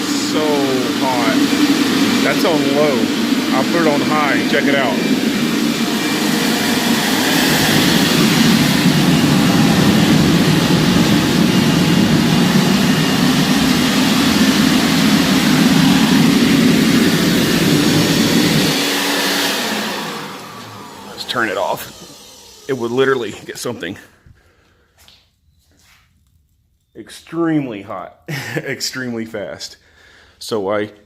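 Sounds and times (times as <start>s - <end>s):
rush of blower air and burning gas: 0.0s - 23.9s.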